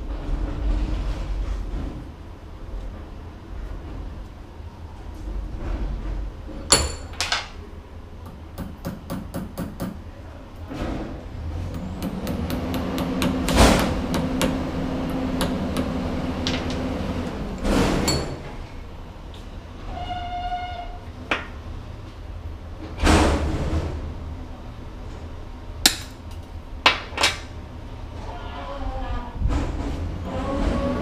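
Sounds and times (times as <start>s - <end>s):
steady low hum: 0.0s - 20.0s
loud metal strikes: 6.7s - 7.3s.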